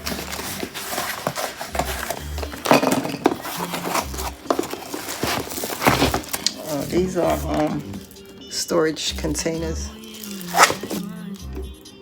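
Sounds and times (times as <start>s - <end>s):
plastic containers clicking and clattering: 0.0s - 8.1s
packaging rustling: 0.0s - 8.4s, 9.9s - 11.2s.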